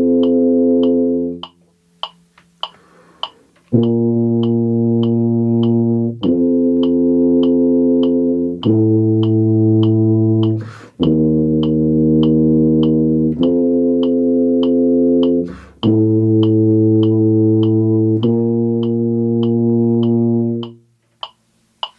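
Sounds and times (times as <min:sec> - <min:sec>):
tuba sustained notes: 0:00.0 - 0:01.5, 0:03.7 - 0:20.9
metronome ticking: 0:00.0 - 0:21.9
breath intake: 0:10.6 - 0:11.0.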